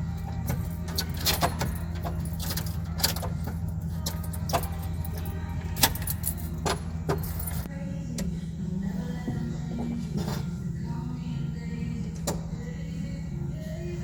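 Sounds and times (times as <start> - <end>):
plastic and metal parts clinking: 0.2 - 7.7.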